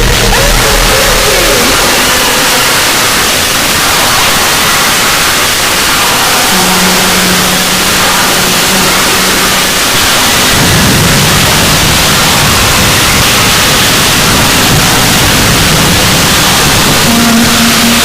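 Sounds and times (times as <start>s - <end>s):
harsh distorted static noise: 0.0s - 18.0s
low steady tone: 17.0s - 18.0s.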